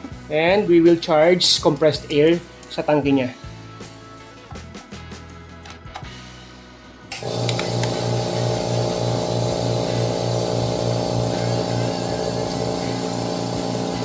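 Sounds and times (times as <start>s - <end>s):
air compressor running: 7.1s - 14.0s.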